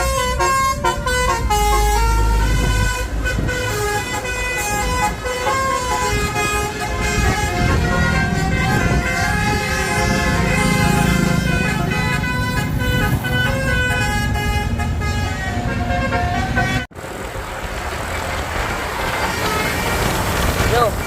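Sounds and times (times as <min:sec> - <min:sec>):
multi-tone air horn tune: 0:00.0 - 0:16.9
bus engine running: 0:00.0 - 0:21.0
road noise: 0:00.0 - 0:21.0.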